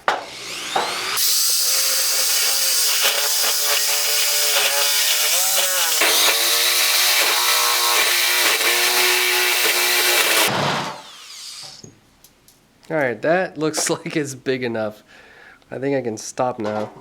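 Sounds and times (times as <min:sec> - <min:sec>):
electric drill boring: 0:00.2 - 0:11.9.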